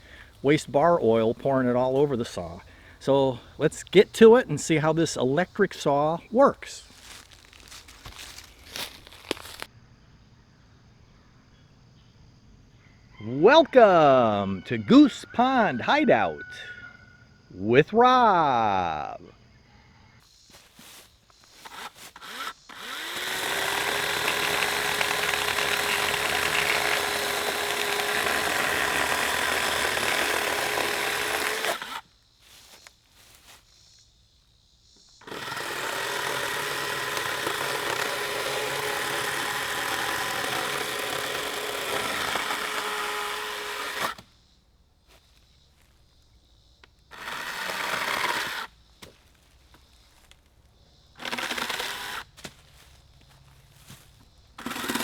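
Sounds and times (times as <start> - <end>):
electric chainsaw cutting wood: 21.6 - 32.0, 35.2 - 44.2, 47.1 - 48.7, 51.2 - 52.3, 54.6 - 55.0.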